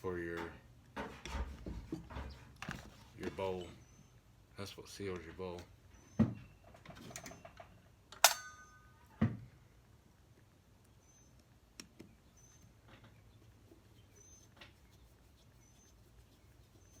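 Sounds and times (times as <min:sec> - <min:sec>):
sharp metallic clink: 0:08.2 - 0:09.0.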